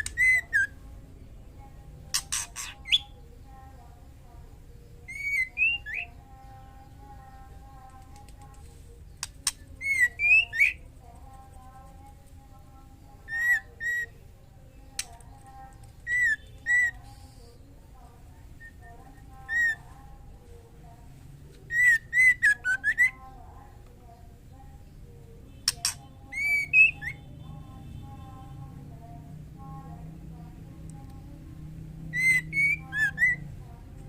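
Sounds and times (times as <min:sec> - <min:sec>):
sharp clicks: 0:07.9 - 0:09.7, 0:14.9 - 0:16.0, 0:25.7 - 0:26.0
bird whistled calls: 0:25.8 - 0:27.2.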